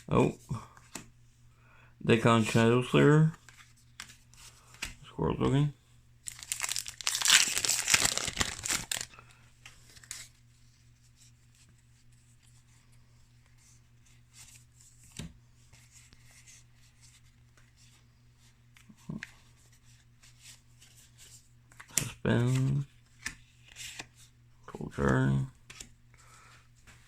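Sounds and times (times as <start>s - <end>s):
foil wrapper crinkling: 6.2s - 9.2s.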